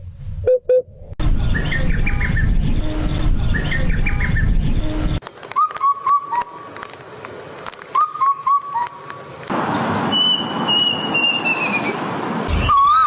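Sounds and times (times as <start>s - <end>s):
bird calling quick notes: 5.4s - 6.8s.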